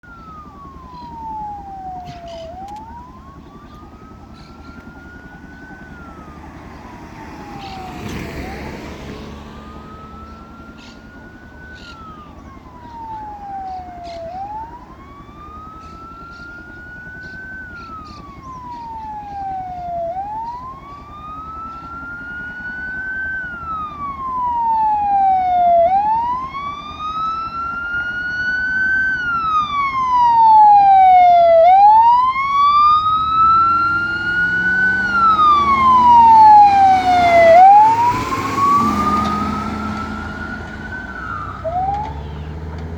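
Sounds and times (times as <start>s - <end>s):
ambulance siren wailing: 0.0s - 42.9s.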